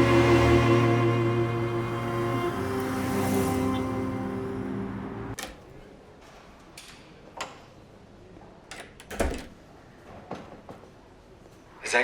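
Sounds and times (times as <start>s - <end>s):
background music: 0.0s - 5.4s.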